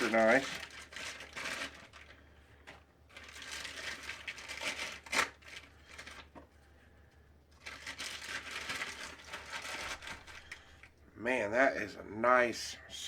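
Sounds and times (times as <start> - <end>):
packaging wrap crinkling: 0.0 - 6.4, 7.6 - 10.9.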